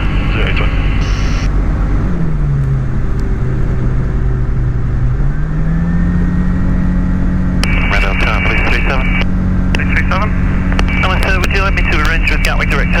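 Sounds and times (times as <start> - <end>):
radio voice: 0.0 - 1.5, 7.6 - 13.0
light aircraft piston engine: 0.0 - 13.0.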